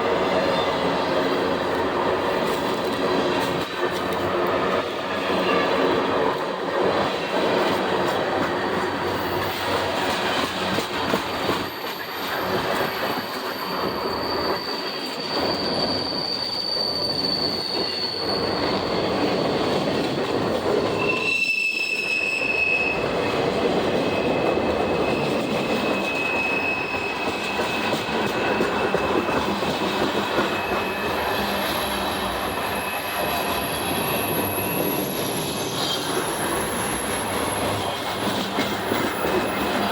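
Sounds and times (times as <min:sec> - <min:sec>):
train wheels rumbling on rail: 0:00.0 - 0:39.9
high wheel squeal: 0:11.2 - 0:20.0, 0:20.8 - 0:23.1, 0:24.0 - 0:39.9.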